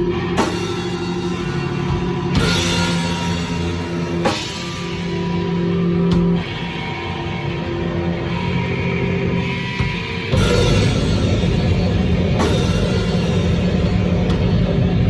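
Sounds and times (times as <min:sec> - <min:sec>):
distorted low guitar chords: 0:00.0 - 0:15.0
crash cymbal hits: 0:10.3 - 0:15.0.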